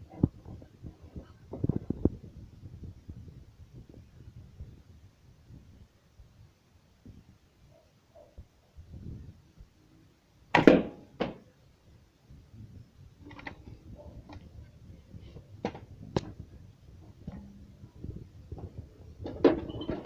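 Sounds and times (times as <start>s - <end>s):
low handling noise: 12.6s - 20.0s.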